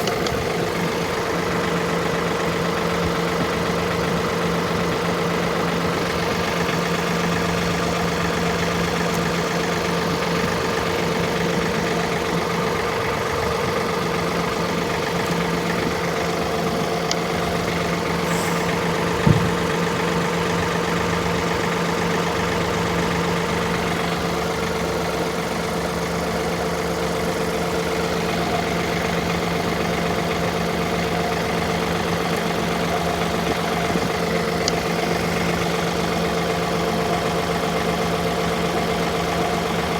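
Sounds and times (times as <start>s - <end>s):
tractor engine idling: 0.0s - 39.9s
short knock: 19.2s - 19.6s.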